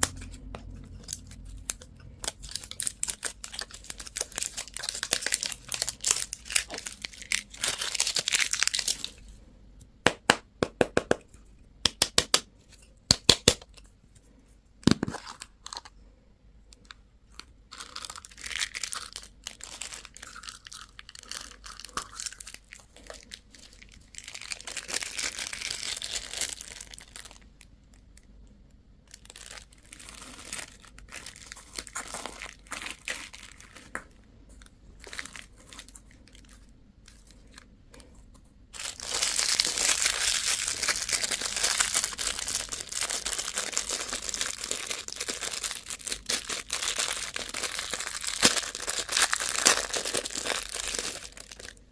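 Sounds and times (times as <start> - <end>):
packaging tearing and crinkling: 0.0 - 9.2, 17.3 - 27.4, 29.1 - 34.1, 38.8 - 51.9.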